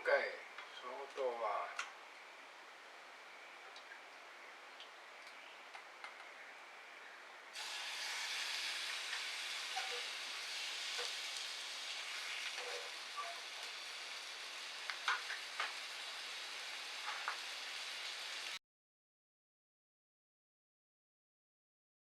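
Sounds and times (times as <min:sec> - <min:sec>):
loud steady hiss: 0:06.8 - 0:18.6
fire popping and sizzling: 0:07.6 - 0:18.6.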